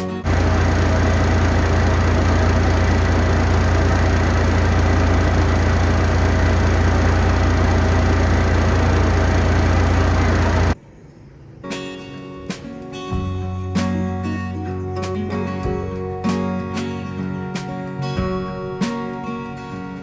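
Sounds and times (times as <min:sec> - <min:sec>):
heavy vehicle engine idling: 0:00.0 - 0:10.8.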